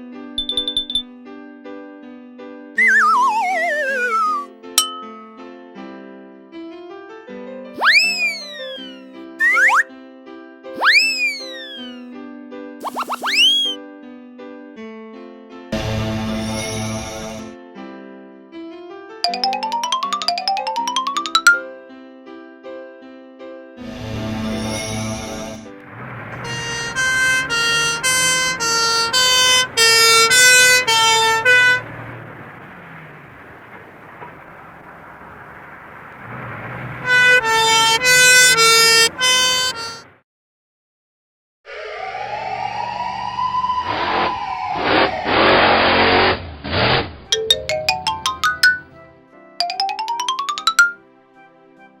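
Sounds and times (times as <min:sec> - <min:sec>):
two-tone siren: 0:02.8 - 0:04.5, 0:07.8 - 0:09.8, 0:10.8 - 0:12.0, 0:26.2 - 0:32.1, 0:37.0 - 0:40.0, 0:41.7 - 0:45.3
children's music: 0:02.8 - 0:05.4, 0:07.8 - 0:09.9, 0:10.8 - 0:12.1, 0:19.3 - 0:21.9, 0:26.4 - 0:31.8, 0:37.6 - 0:40.0, 0:47.4 - 0:51.8
rising bell-like notes: 0:04.8 - 0:05.4, 0:19.3 - 0:21.8, 0:47.4 - 0:49.0, 0:49.6 - 0:51.0
low engine rumble: 0:25.4 - 0:40.1
loud noisy rush: 0:25.8 - 0:38.2.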